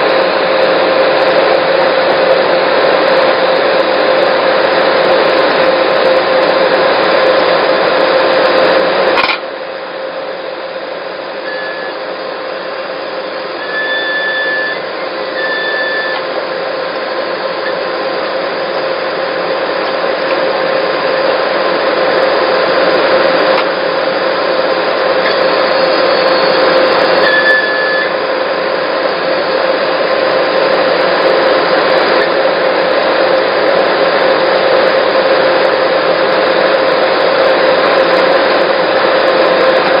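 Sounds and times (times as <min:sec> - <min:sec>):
loader engine and hydraulics drone: 0:00.0 - 0:40.0
high-pitched hydraulic whines: 0:07.4 - 0:32.4.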